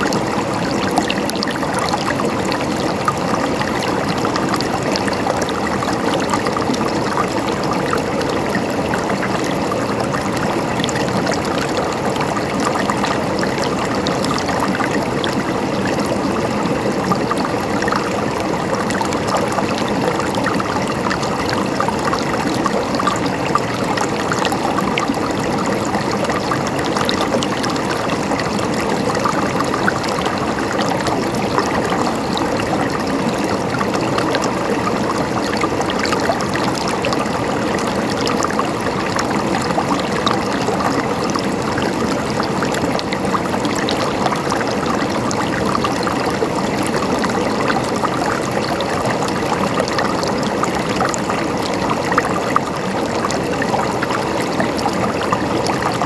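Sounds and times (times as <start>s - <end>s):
water flowing and gurgling: 0.0s - 56.0s.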